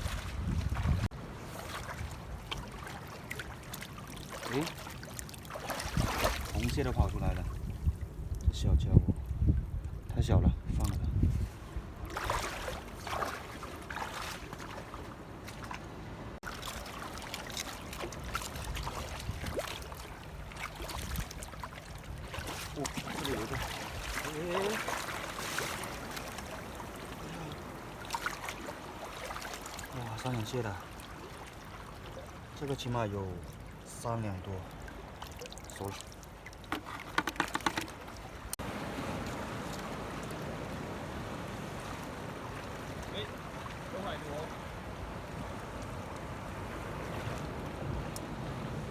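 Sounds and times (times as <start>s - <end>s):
wind rumbling on microphone: 0.0s - 2.5s, 5.8s - 13.1s, 18.1s - 24.8s
seawater lapping among rocks: 0.0s - 48.9s
crab shell clicks and rattles: 36.7s - 38.0s
small knocks: 36.7s - 38.2s.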